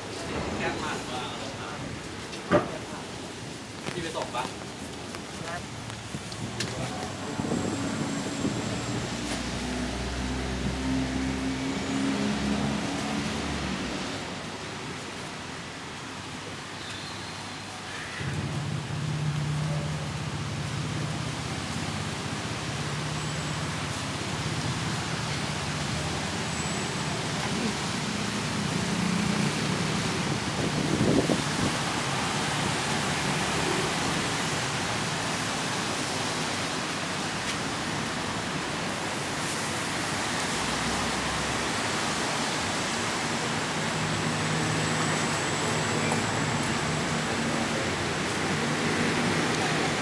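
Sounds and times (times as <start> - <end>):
rainfall hissing: 0.0 - 50.0.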